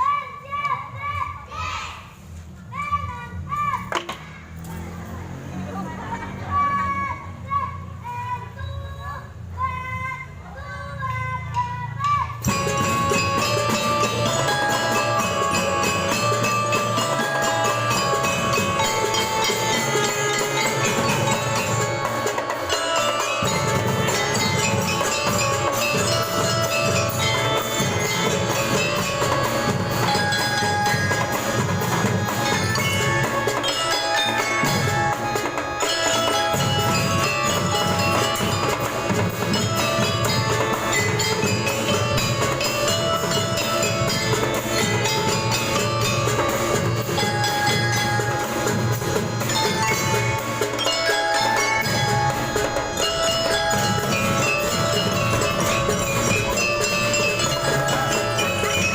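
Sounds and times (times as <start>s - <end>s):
drums: 0.0s - 58.9s
mallet percussion melody: 12.3s - 58.9s.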